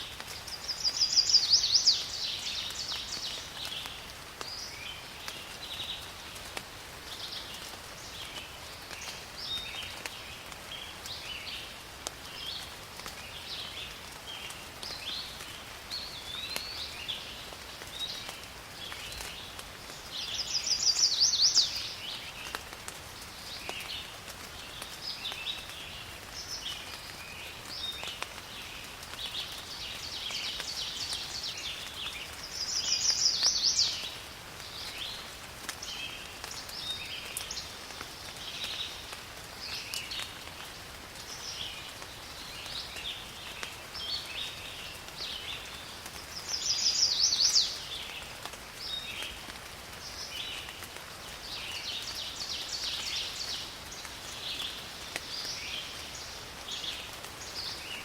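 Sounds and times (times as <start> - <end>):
faint rain hiss: 0.0 - 58.0
birds calling: 29.5 - 35.2.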